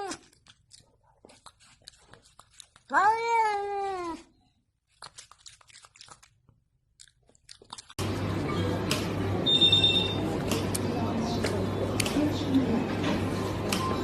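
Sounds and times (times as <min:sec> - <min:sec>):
crunching and chewing: 0:00.0 - 0:03.2, 0:03.8 - 0:08.6
cat meowing: 0:02.9 - 0:04.2.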